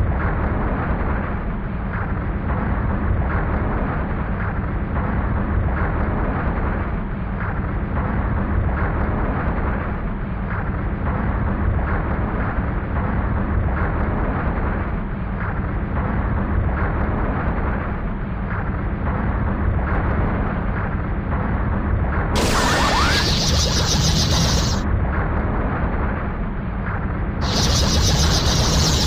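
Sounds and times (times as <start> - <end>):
hissing burst with rising whistle: 22.4 - 24.8, 27.4 - 29.0.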